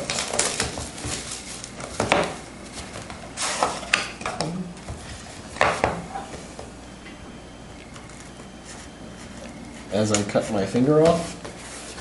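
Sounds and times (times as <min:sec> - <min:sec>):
cardboard and wrapping rustling: 0:00.0 - 0:03.9, 0:07.9 - 0:12.0.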